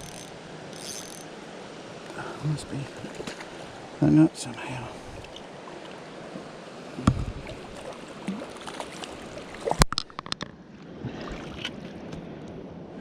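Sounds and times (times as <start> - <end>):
creek water running: 0.0 - 10.3
dull knock: 7.0 - 7.3.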